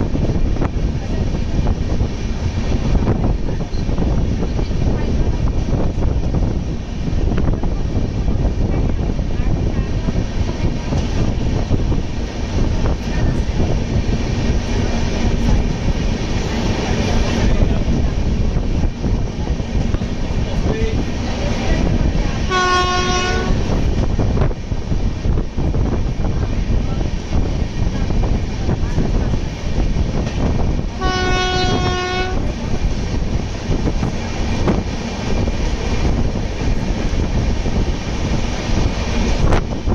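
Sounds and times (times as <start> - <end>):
passenger train passing: 0.0 - 39.9
train horn blast: 22.4 - 23.7, 31.0 - 32.4.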